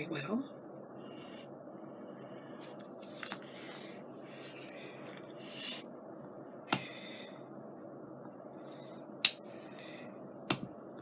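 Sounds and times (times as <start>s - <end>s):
room fan hum: 0.0s - 11.0s
soft scrape: 4.4s - 5.8s.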